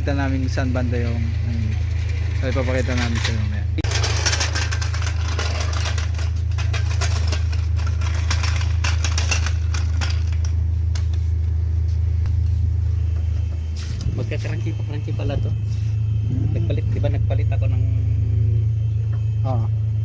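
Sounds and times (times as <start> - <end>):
car engine idling: 5.9 - 20.0.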